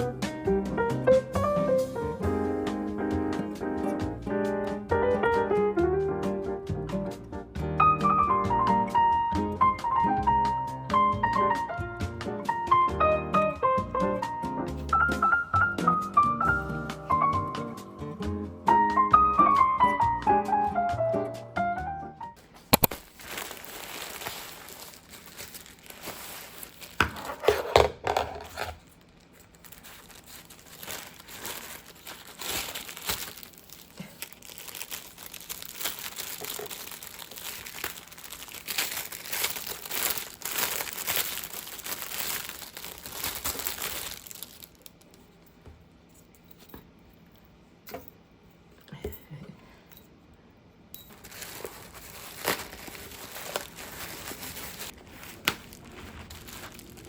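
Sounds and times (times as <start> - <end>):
wrapping crinkling: 22.7 - 45.3, 51.1 - 57.0.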